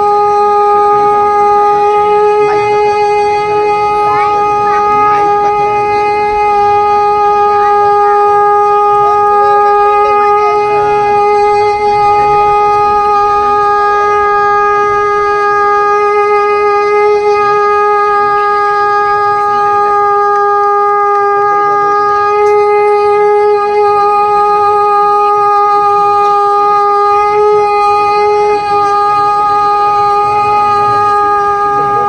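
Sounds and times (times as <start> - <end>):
conch shell blown: 0.0 - 32.0.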